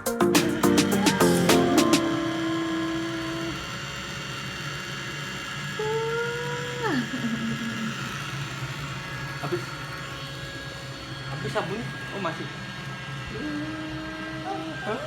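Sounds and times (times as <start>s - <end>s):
high tone sliding down: 0.0s - 4.0s
small electric motor humming: 0.5s - 15.0s.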